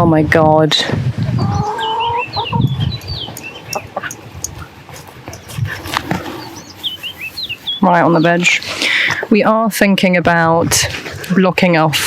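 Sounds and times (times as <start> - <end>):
hens clucking: 1.3 - 11.4
small bird chirping: 1.4 - 4.6, 6.4 - 8.6.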